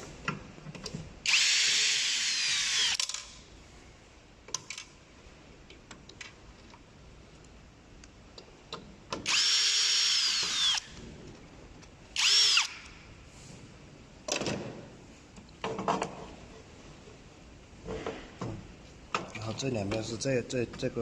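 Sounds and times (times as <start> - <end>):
electric screwdriver motor whine: 1.3 - 3.1, 9.3 - 10.9, 12.2 - 12.8.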